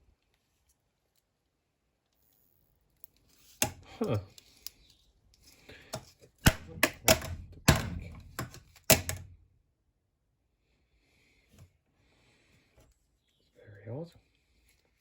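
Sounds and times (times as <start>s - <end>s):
hard plastic cracking and knocking: 6.0s - 9.4s.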